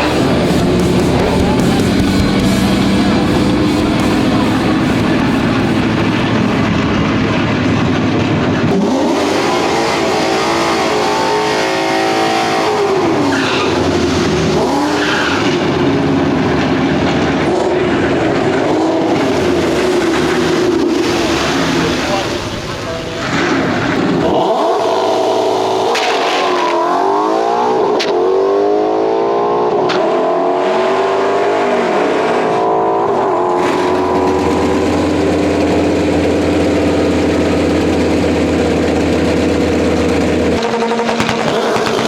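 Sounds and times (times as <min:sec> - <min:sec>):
heavy rock music: 0:00.0 - 0:13.3
engine revving hard: 0:00.0 - 0:42.0.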